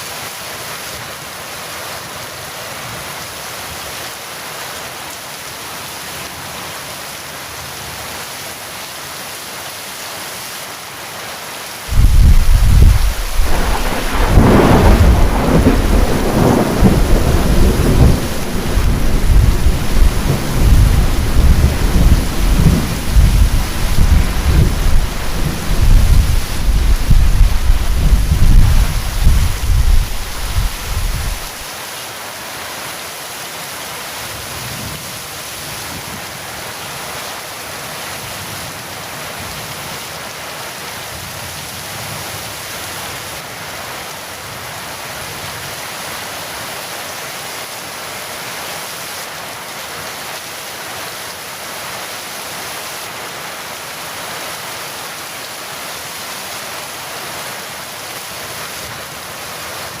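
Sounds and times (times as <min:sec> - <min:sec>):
heavy rain falling: 0:00.0 - 1:00.0
thunder rumble: 0:11.9 - 0:31.6.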